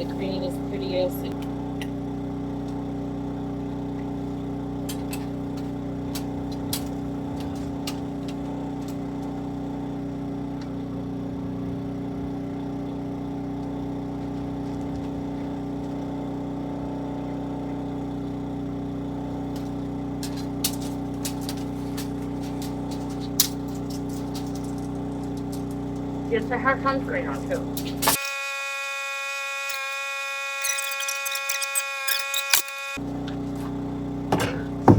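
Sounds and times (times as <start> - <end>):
portable generator running: 0.0 - 34.9.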